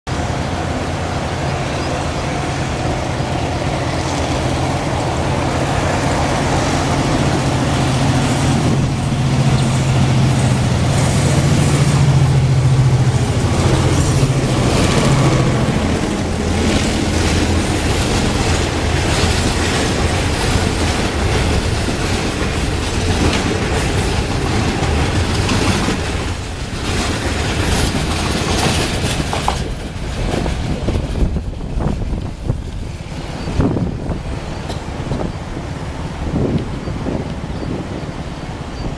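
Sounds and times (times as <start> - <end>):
locomotive engine drone: 0.1 - 29.0
wheels clicking over rail joints: 13.1 - 35.4.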